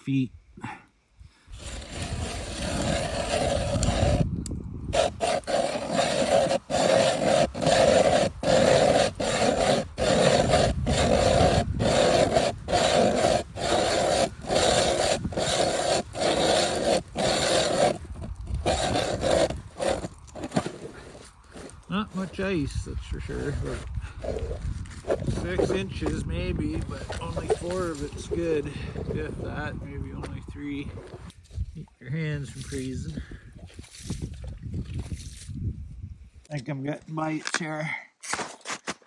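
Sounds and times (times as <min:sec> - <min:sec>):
ice auger scraping through ice: 0:01.5 - 0:31.4.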